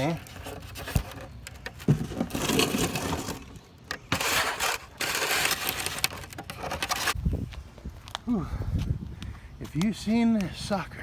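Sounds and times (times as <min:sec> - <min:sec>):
packaging crunching and rustling: 0:04.2 - 0:07.2.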